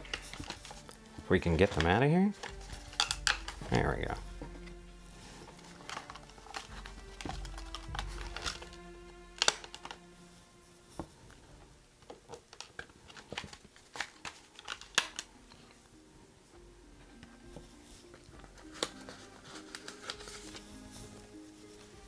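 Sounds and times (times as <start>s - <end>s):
faint background music: 0.0s - 22.0s
plastic case clicks and knocks: 1.6s - 4.6s, 5.8s - 10.0s.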